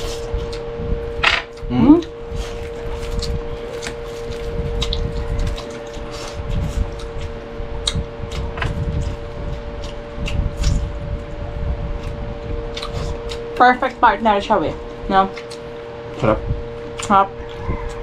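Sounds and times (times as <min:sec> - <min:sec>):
steady hum: 0:00.0 - 0:18.0
chewing and mouth smacks: 0:02.3 - 0:13.6, 0:14.9 - 0:15.9.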